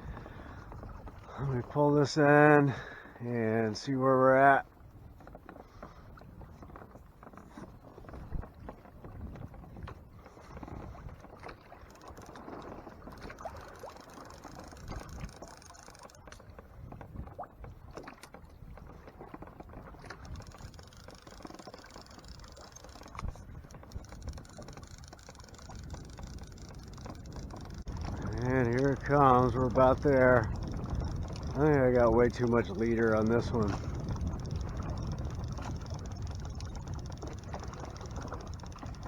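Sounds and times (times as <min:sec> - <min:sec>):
low wind rumble: 0:00.0 - 0:04.8, 0:19.8 - 0:39.0
water lapping against kayak hull: 0:00.0 - 0:39.0
small clicks and knocks: 0:11.4 - 0:16.5, 0:20.0 - 0:27.9.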